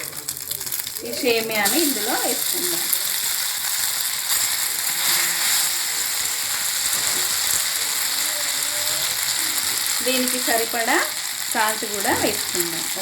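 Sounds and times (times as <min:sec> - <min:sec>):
food sizzling in hot oil: 0:00.0 - 0:13.0
spoon scraping and knocking pan: 0:04.2 - 0:07.7.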